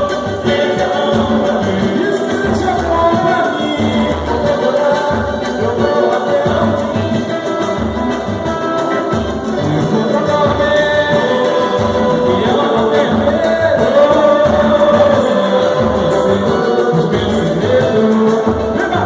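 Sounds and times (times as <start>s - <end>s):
percussion beat: 0.0s - 19.0s
samba band playing: 0.0s - 19.0s
voices singing together: 0.0s - 19.0s.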